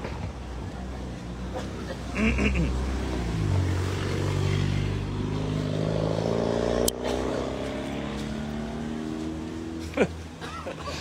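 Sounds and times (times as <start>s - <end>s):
vehicle engine accelerating: 2.3s - 10.3s.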